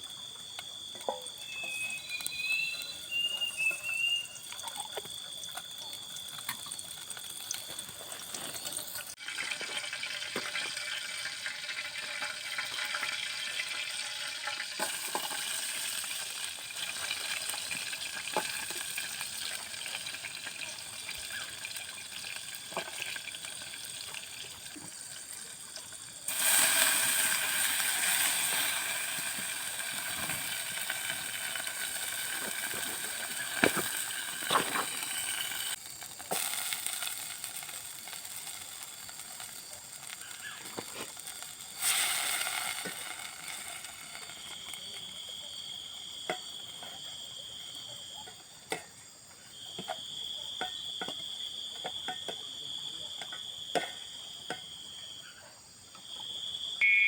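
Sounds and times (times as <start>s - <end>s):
insects buzzing: 0.0s - 48.0s
short warbling call: 1.4s - 4.8s
water-like hiss: 23.9s - 44.5s.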